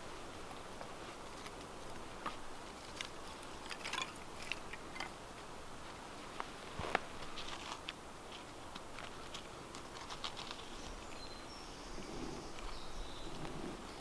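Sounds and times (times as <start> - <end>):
steady outdoor hiss: 0.0 - 14.0
light clicks and crackles: 6.3 - 11.3.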